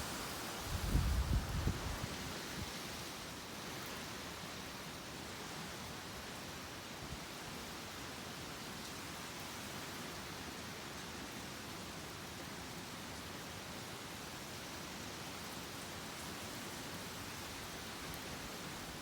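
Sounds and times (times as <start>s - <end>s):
wind and rain rushing: 0.0s - 3.8s.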